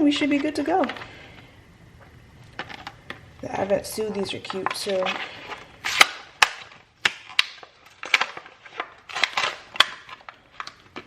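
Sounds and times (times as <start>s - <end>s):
plastic packaging clicks and knocks: 4.4s - 11.0s.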